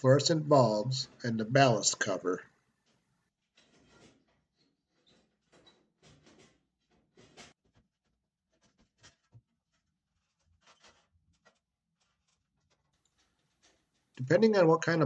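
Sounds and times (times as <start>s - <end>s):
faint handling rustles and scrapes: 2.6s - 14.2s.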